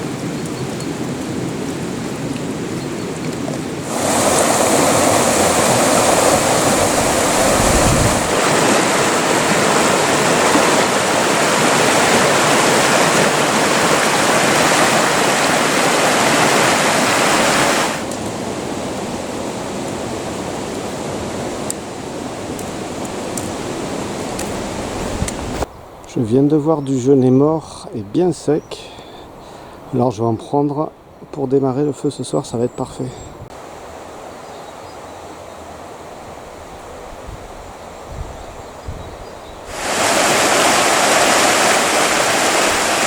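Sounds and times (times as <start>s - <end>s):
mountain stream rushing: 0.0s - 25.7s, 39.6s - 43.0s.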